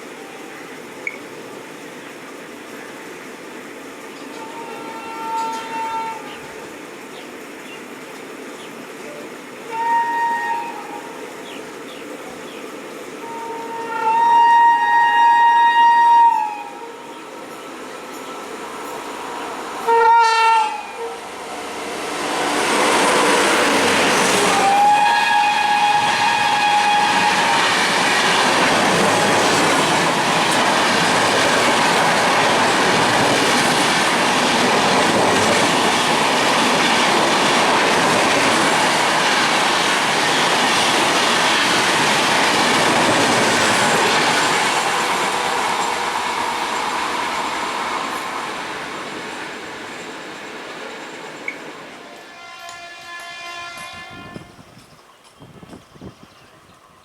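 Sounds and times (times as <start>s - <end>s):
train horn: 4.2s - 6.7s, 9.1s - 11.4s, 13.2s - 33.9s, 42.9s - 48.5s, 52.1s - 54.7s
train wheels on rails: 10.3s - 57.0s.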